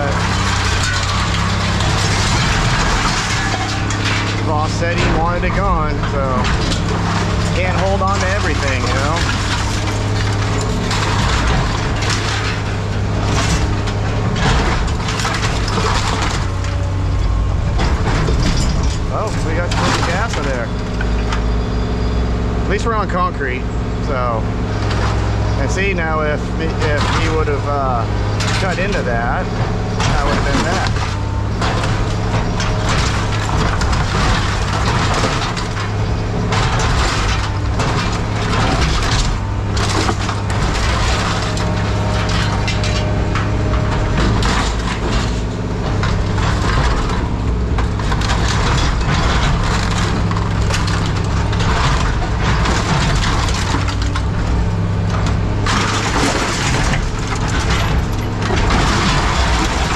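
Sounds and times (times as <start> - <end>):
heavy machine engine running: 0.0 - 59.9
metal crunching and cracking: 0.0 - 59.9.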